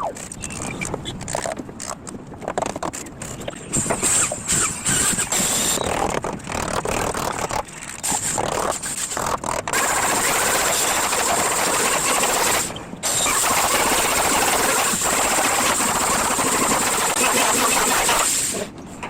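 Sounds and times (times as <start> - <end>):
power tool motor whining: 3.8 - 6.0, 9.8 - 18.6.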